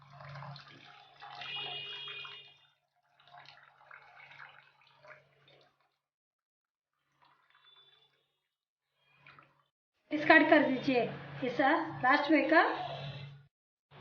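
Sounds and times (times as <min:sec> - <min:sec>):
liquid pouring into a dish: 0:00.0 - 0:06.1, 0:06.9 - 0:08.4.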